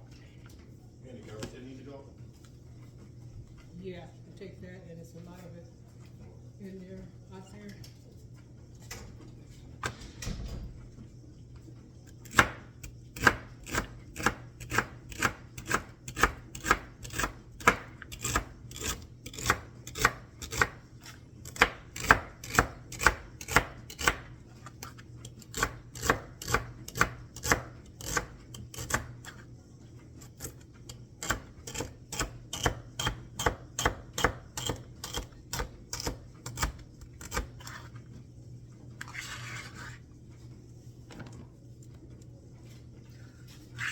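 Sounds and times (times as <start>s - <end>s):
knife chopping celery: 12.2s - 29.4s, 30.2s - 38.0s.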